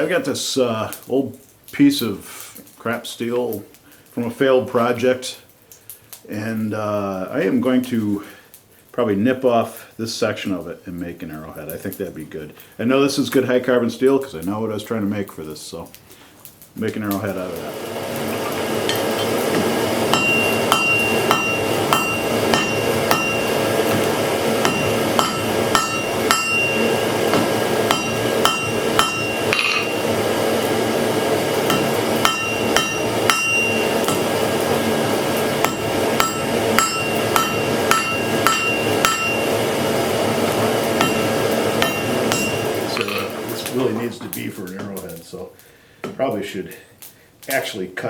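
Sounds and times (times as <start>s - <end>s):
steady rushing noise: 17.7s - 43.6s
hammer striking steel on anvil: 18.9s - 30.2s, 31.5s - 39.8s, 40.4s - 43.0s.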